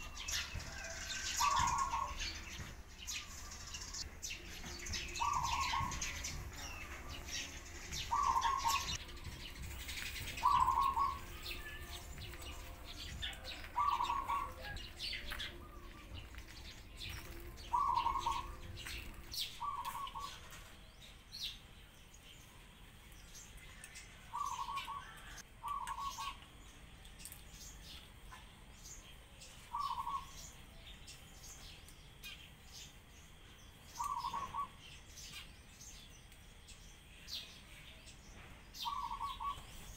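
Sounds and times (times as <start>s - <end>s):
pigeons calling: 0.0s - 21.0s, 24.1s - 26.4s, 29.7s - 30.6s, 33.9s - 35.5s, 38.7s - 39.9s
sparrows chirping: 0.0s - 39.9s.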